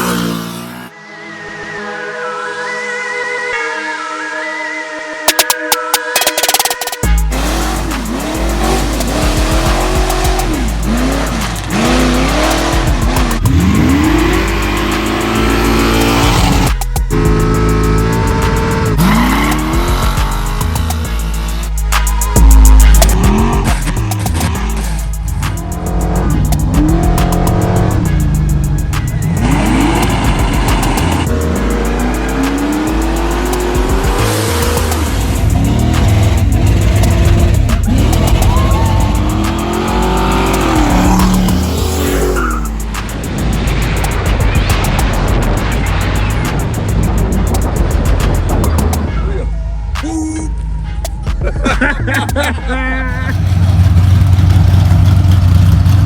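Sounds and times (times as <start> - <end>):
car engine revving: 0.0 - 0.9, 6.2 - 49.2, 53.1 - 56.0
hip-hop beat with heavy bass: 5.2 - 53.4
tire squeal: 33.8 - 43.2.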